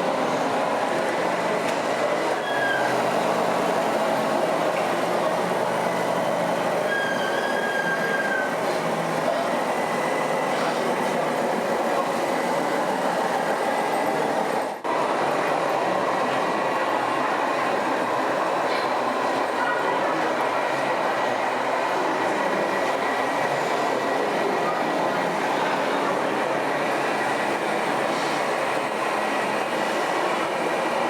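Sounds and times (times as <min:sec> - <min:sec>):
short high squeals: 0:02.3 - 0:03.0, 0:06.8 - 0:08.6.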